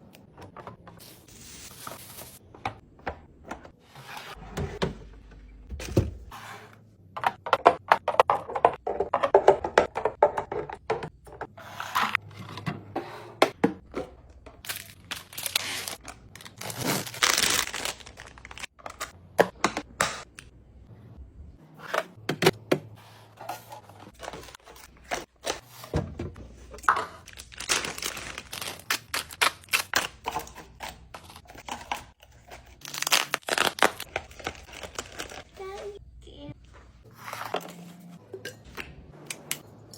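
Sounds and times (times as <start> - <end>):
plastic packaging crinkling: 14.7 - 18.7, 27.2 - 30.2.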